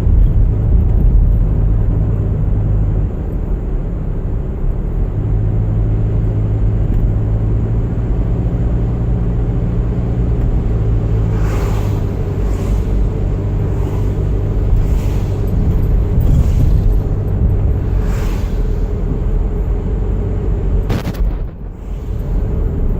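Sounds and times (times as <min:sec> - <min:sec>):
engine and tyre rumble: 0:00.0 - 0:22.9
short hissing sounds: 0:10.8 - 0:19.6, 0:21.0 - 0:22.8.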